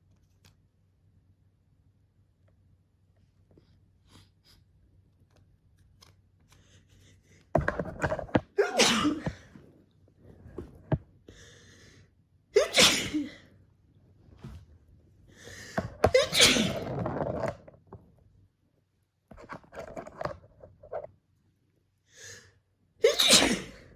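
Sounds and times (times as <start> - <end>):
person sneezing: 8.6 - 9.4, 12.6 - 13.5, 16.1 - 16.9, 23.0 - 23.9.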